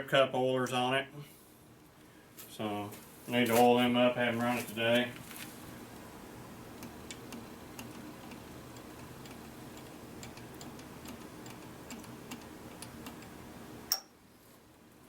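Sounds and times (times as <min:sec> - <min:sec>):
low steady hum: 0:00.0 - 0:15.0
light clicks and taps: 0:06.8 - 0:13.4.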